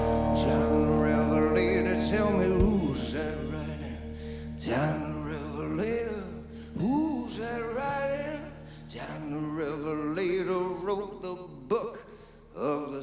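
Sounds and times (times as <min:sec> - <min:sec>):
gospel blues music: 0:00.0 - 0:13.0
person singing wordless vocals: 0:00.0 - 0:13.0.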